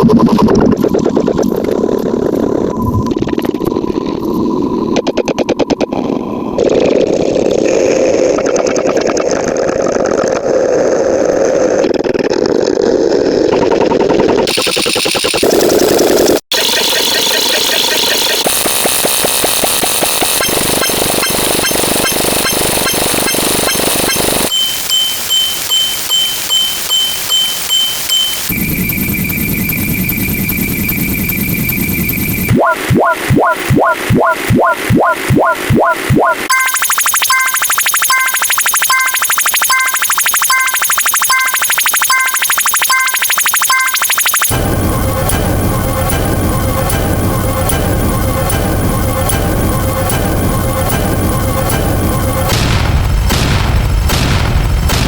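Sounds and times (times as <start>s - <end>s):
high electronic beep: 14.5s - 15.8s, 16.5s - 52.5s.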